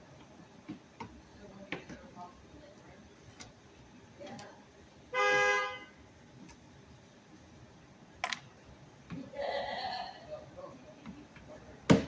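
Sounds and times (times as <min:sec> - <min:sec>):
car horn honk: 0:05.1 - 0:06.0.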